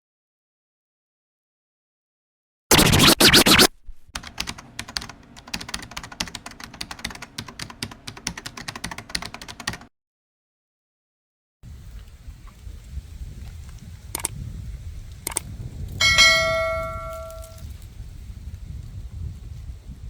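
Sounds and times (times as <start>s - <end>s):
loud burst: 2.7s - 4.0s
keyboard typing clicks: 3.5s - 9.9s.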